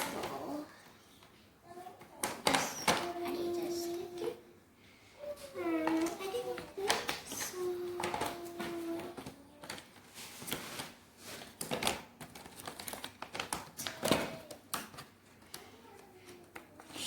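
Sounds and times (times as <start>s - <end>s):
paper rustling: 5.4s - 17.0s.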